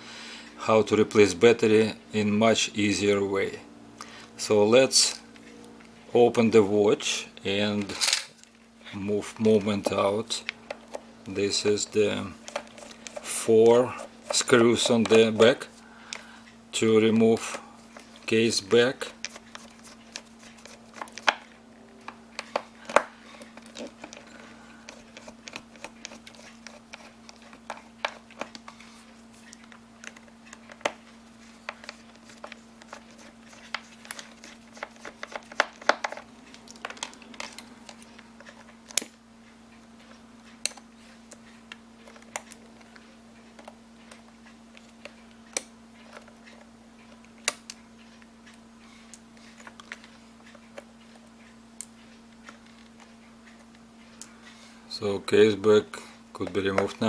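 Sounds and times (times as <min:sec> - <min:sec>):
faint steady hum: 0:00.0 - 0:57.0
screwdriver clicking on metal screws: 0:24.9 - 0:28.6.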